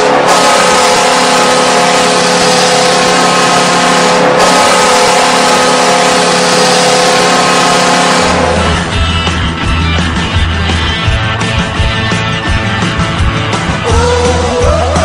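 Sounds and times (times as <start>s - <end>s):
goal horn blaring: 0.0s - 9.0s
loud crowd noise: 0.0s - 15.0s.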